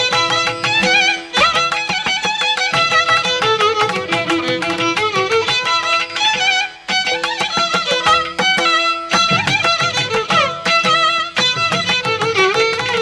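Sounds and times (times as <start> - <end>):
quick dense beat: 0.0 - 13.0
violin with wavering held notes: 0.0 - 13.0.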